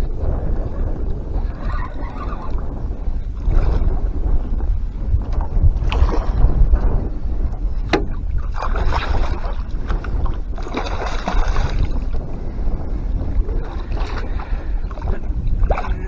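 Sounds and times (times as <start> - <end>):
wind buffeting microphone: 0.0 - 16.0
splashy rushes: 10.6 - 12.0.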